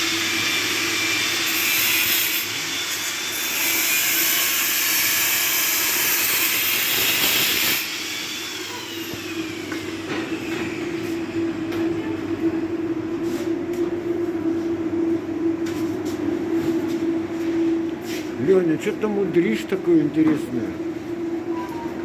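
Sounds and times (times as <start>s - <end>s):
loud rushing machine noise: 0.0s - 12.5s.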